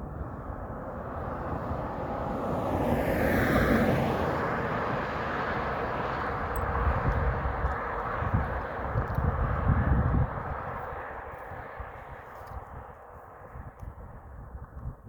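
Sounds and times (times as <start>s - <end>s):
vehicle driving past: 0.2s - 8.8s.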